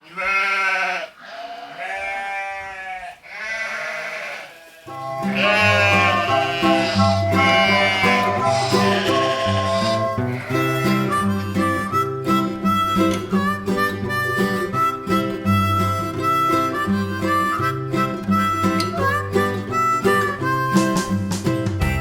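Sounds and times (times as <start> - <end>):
sheep bleating: 0.0 - 11.2
music with bass line: 18.2 - 22.0.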